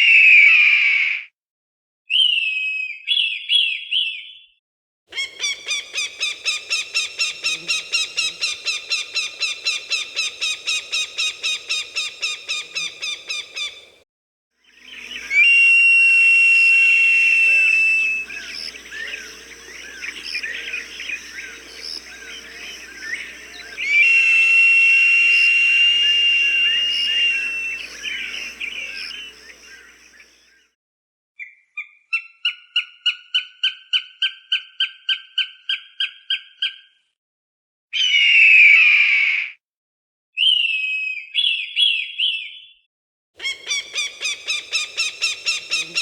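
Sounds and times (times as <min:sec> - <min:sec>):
birds chirping: 0:05.1 - 0:14.0, 0:14.6 - 0:30.5, 0:43.4 - 0:46.0
hawk call notes: 0:05.2 - 0:13.9, 0:14.9 - 0:30.3, 0:43.4 - 0:46.0
high whistled notes: 0:14.9 - 0:19.2, 0:21.4 - 0:29.9
hawk harsh scream: 0:15.3 - 0:19.0, 0:23.8 - 0:29.4.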